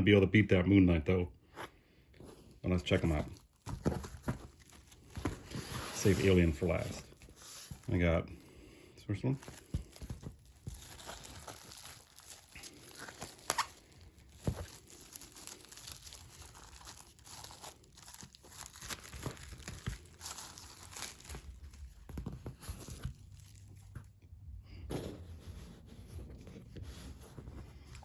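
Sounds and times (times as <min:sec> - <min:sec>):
plastic wrapping crinkling: 0:02.7 - 0:08.5, 0:09.2 - 0:24.2
plastic wrapping ripping: 0:09.4 - 0:22.2.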